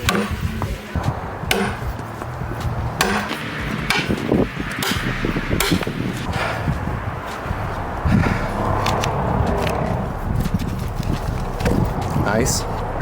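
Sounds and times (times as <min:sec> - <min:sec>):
sledgehammer striking steel wedges: 0:00.0 - 0:00.9, 0:01.5 - 0:02.2, 0:03.0 - 0:06.4.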